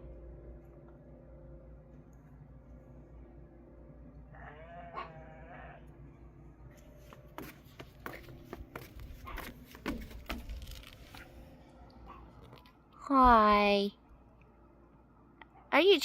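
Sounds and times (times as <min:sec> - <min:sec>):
goat bleating: 0:04.3 - 0:05.9.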